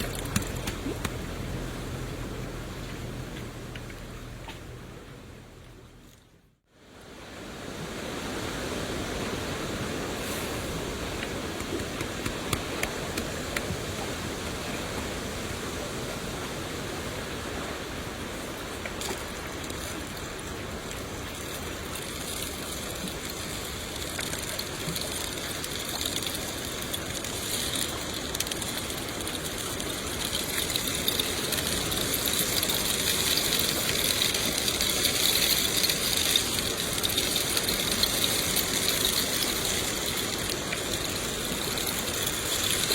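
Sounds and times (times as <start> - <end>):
steady rain falling: 0.0 - 6.0, 6.6 - 42.9.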